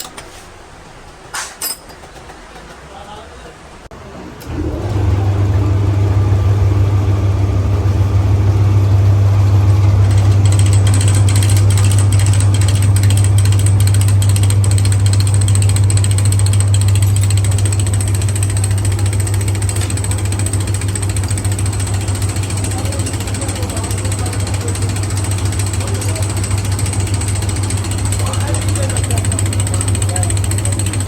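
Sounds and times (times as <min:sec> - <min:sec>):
diesel engine droning: 0:04.0 - 0:31.0
rapid ticking clatter: 0:08.2 - 0:31.0.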